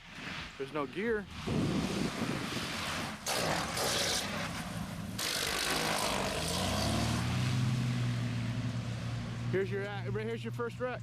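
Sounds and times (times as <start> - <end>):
propeller plane engines: 1.8 - 11.0.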